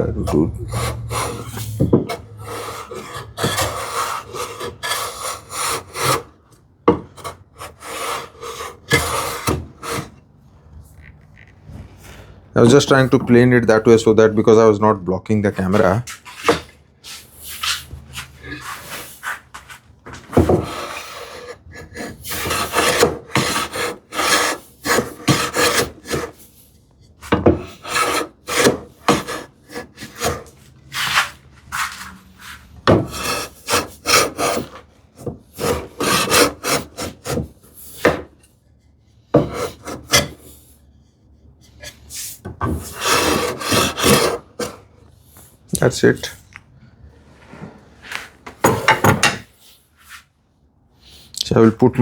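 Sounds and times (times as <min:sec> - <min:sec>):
hand plane swishing on wood: 0:00.2 - 0:06.4, 0:07.2 - 0:10.2, 0:15.7 - 0:26.6, 0:27.2 - 0:34.9, 0:35.5 - 0:38.4, 0:39.4 - 0:40.7, 0:41.8 - 0:44.9.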